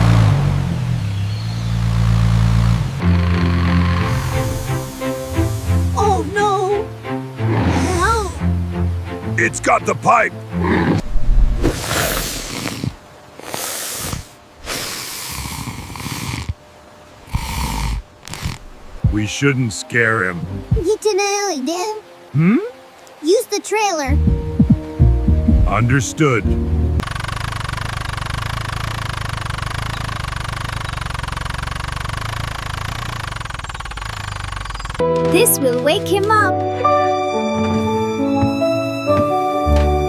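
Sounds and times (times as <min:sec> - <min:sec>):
cartoon tractor engine chugging: 0:00.0 - 0:04.6, 0:27.0 - 0:36.5
loud hissing: 0:00.0 - 0:08.5, 0:10.5 - 0:19.0, 0:27.0 - 0:35.0.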